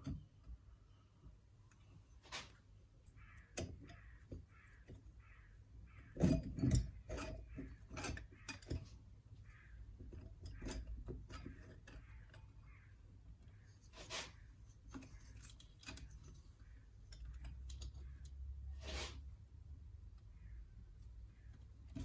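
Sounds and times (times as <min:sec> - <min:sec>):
tools and metal parts clicking: 0:06.1 - 0:09.0, 0:10.1 - 0:12.6, 0:14.7 - 0:18.5.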